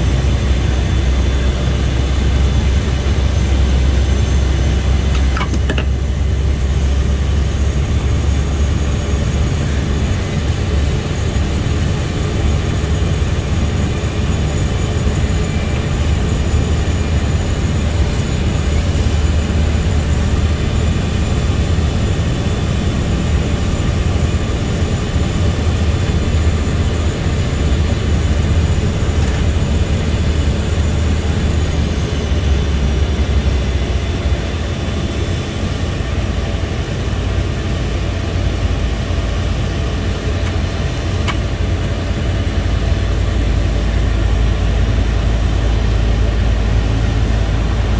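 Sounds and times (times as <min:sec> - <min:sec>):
high turbine whine: 0:00.0 - 0:47.9
turboprop engine droning: 0:00.0 - 0:47.9.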